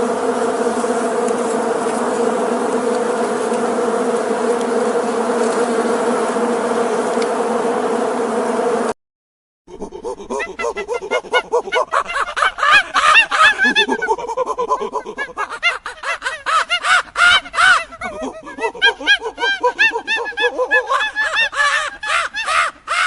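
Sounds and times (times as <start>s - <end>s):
flock of birds calling: 11.9s - 14.0s.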